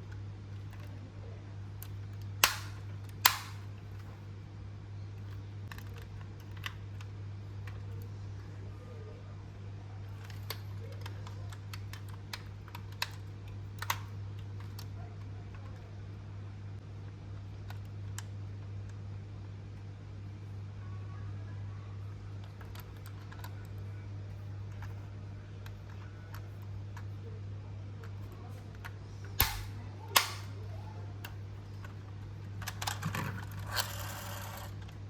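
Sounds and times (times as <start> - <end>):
steady low hum: 0.0 - 35.0
clicks from toy truck handling: 1.8 - 3.6, 10.2 - 14.9.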